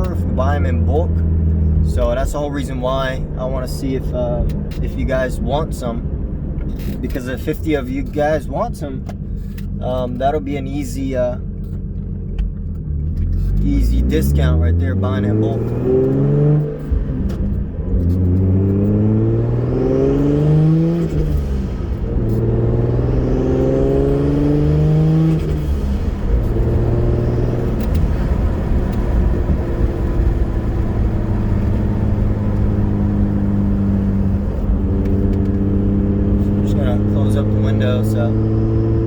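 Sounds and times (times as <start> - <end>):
car engine accelerating: 0.0 - 39.0.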